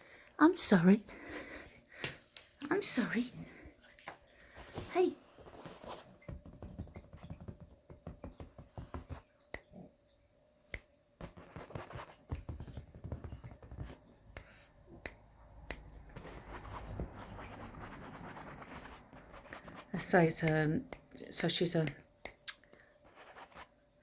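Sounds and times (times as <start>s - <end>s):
sharp clicks and taps: 19.6s - 22.8s.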